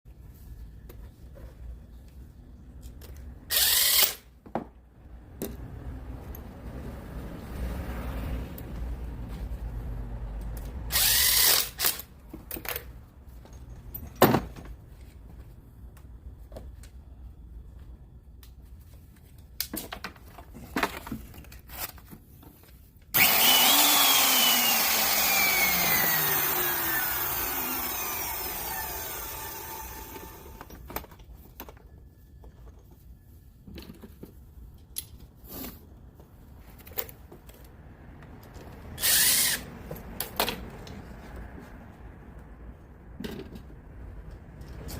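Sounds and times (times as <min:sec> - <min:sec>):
power tool running: 0:23.2 - 0:30.8.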